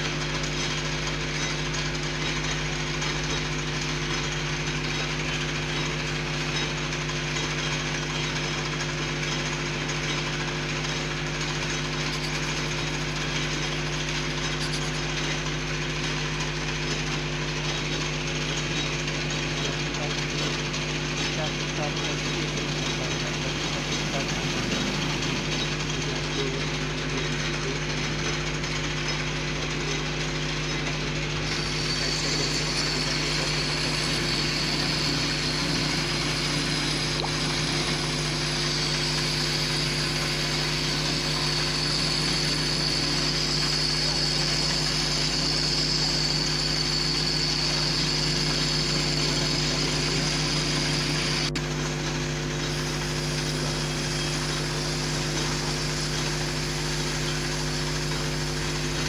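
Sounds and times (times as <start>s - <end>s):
lathe motor hum: 0.0s - 59.0s
high steady whine: 21.2s - 27.8s, 31.4s - 59.0s.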